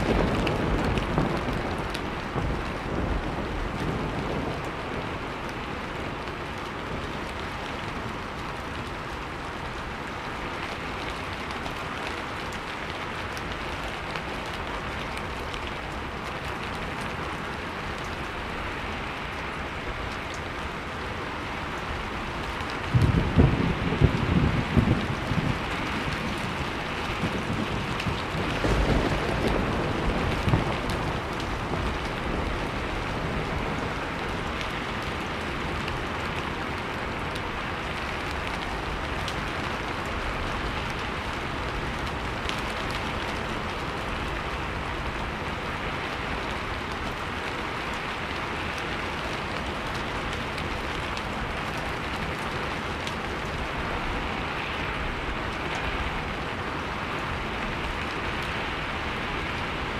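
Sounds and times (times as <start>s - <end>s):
low thunder rumble: 0.0s - 7.2s, 22.4s - 36.3s
steady rain falling: 0.0s - 59.9s.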